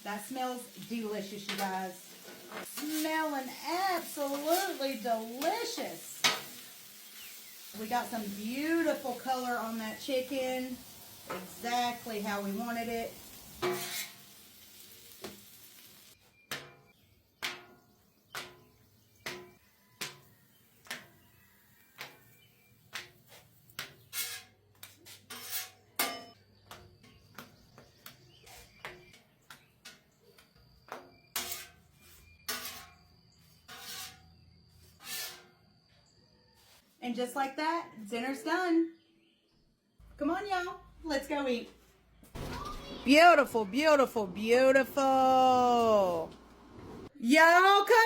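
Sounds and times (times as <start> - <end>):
chicken sizzling: 0.0 - 16.3.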